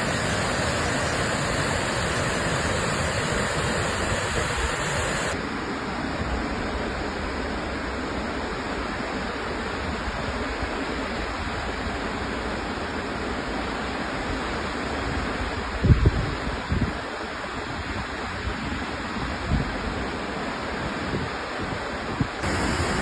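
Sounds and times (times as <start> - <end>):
waterfall rushing: 0.0 - 5.4, 22.4 - 23.0.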